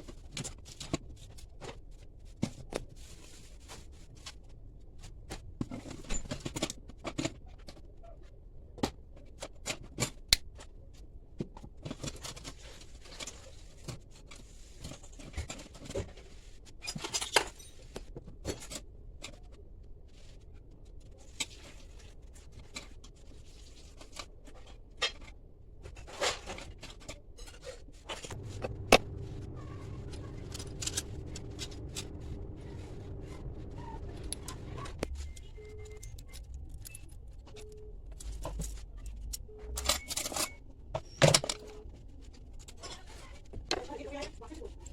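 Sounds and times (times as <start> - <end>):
metal parts clicking and scraping: 11.8 - 19.6, 23.8 - 44.3
steady low hum: 28.1 - 39.7.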